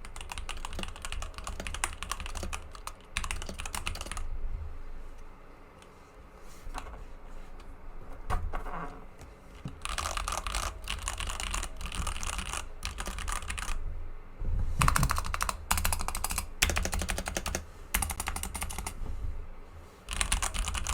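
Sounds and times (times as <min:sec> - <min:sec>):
mechanical keyboard typing: 0:00.0 - 0:04.3, 0:09.6 - 0:13.8, 0:14.8 - 0:19.0, 0:20.1 - 0:20.9.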